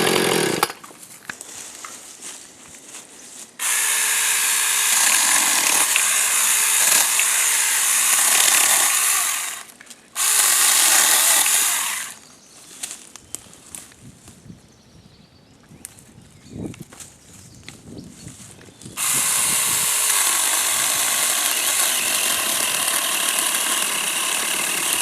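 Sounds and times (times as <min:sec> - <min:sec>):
electric chainsaw cutting wood: 0:00.0 - 0:00.8, 0:03.6 - 0:12.2, 0:19.0 - 0:25.0.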